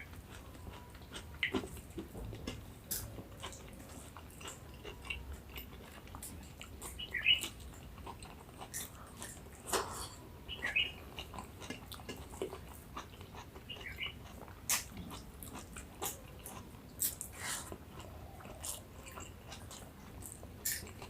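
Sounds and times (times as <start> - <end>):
person chewing food: 0.0 - 21.0
wet mouth clicks: 20.2 - 21.0.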